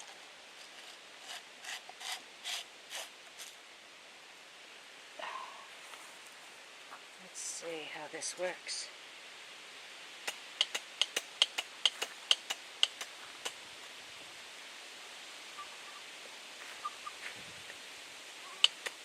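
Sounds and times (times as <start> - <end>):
faint ticks: 10.2 - 13.6, 18.6 - 19.0.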